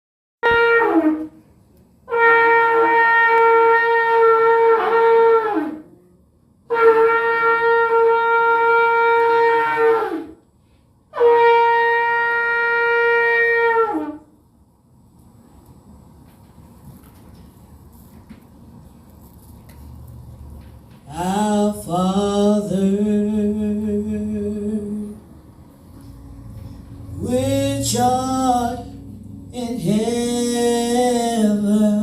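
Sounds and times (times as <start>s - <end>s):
shofar blasts: 0.4s - 6.0s, 6.7s - 10.4s, 11.1s - 14.4s, 26.1s - 32.0s.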